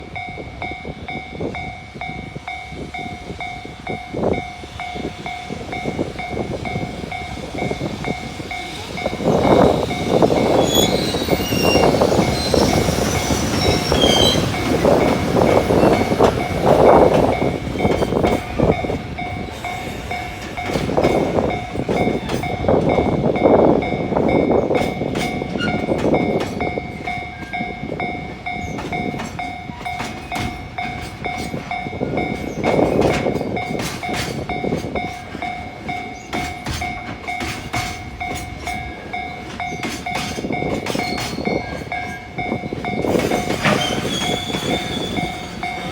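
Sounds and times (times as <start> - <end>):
train rumble: 0.0 - 45.9
high squeals: 4.9 - 22.6, 43.0 - 45.9
wheels clickety-clack: 4.9 - 45.9.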